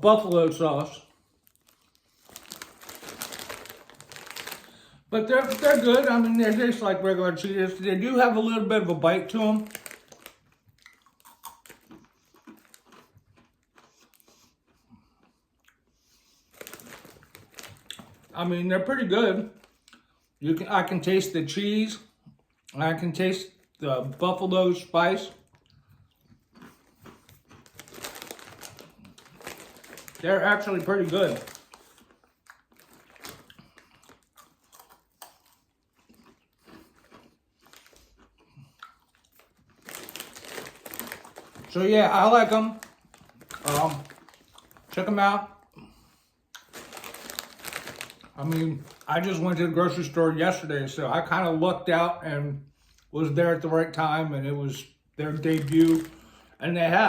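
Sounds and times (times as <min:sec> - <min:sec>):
person chewing crunchy snack: 0:01.1 - 0:06.5, 0:09.6 - 0:18.3, 0:25.4 - 0:45.0, 0:45.6 - 0:49.1.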